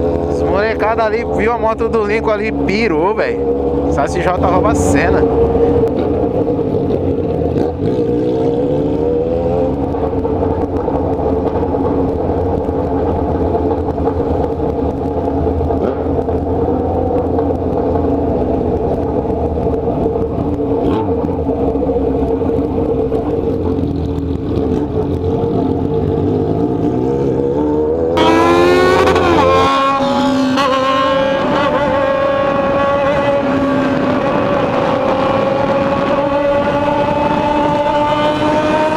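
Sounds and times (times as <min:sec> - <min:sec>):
motorcycle engine revving: 0:00.0 - 0:38.9
wind rushing: 0:28.2 - 0:38.9.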